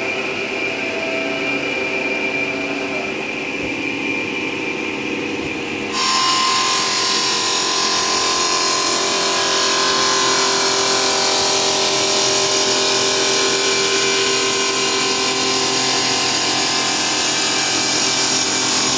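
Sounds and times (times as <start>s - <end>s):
cutting machine high whine: 0.0s - 18.9s.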